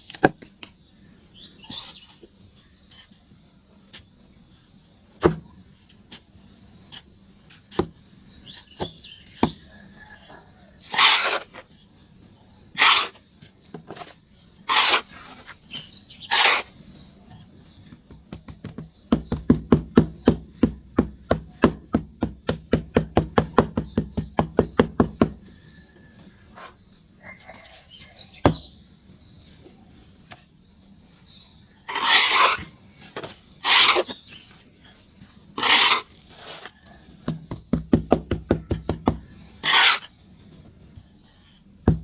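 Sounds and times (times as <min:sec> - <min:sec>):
charcoal scraping and crumbling: 0:10.7 - 0:11.8, 0:12.7 - 0:13.2, 0:13.9 - 0:17.6, 0:31.8 - 0:37.2, 0:39.5 - 0:40.1
charcoal taps: 0:17.9 - 0:25.4, 0:37.2 - 0:39.3
fast even knocks: 0:18.1 - 0:25.4.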